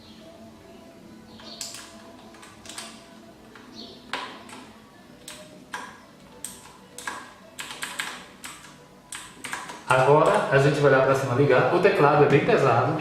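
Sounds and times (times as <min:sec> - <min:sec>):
mechanical keyboard clicks: 0:01.4 - 0:03.0, 0:06.4 - 0:10.5.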